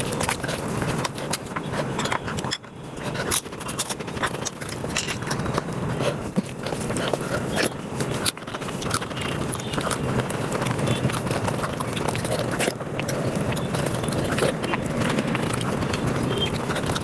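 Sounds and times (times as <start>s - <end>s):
rapid chewing and smacking: 0.0s - 17.0s.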